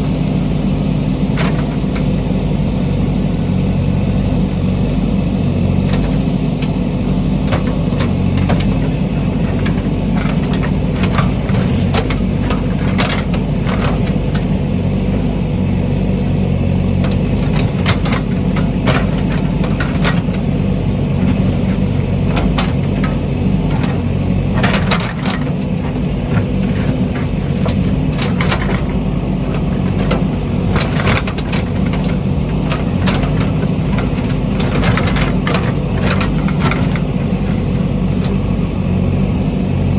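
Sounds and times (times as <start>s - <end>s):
diesel engine running: 0.0s - 39.9s
sharp knocks and clatters: 7.4s - 15.5s, 16.8s - 38.6s.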